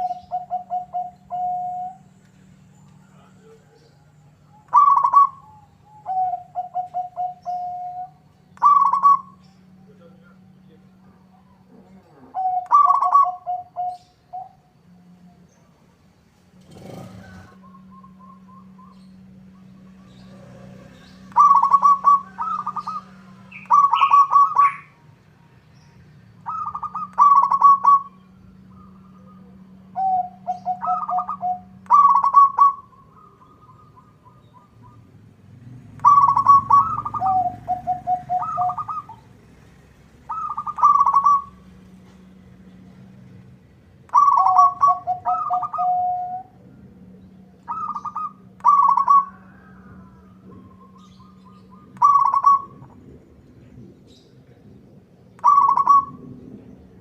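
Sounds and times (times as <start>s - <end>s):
dove cooing: 0.0s - 2.1s, 3.0s - 14.9s, 16.6s - 25.1s, 26.4s - 35.2s, 35.8s - 43.3s, 44.0s - 53.0s, 55.4s - 56.7s
steady low hum: 0.0s - 57.0s.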